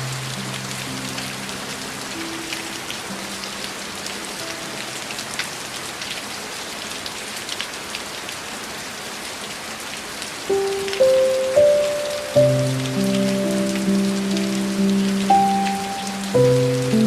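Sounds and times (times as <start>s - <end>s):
soft slow background music: 0.0s - 5.6s, 10.5s - 17.0s
steady rain: 0.0s - 17.0s
raindrops ticking: 10.5s - 17.0s.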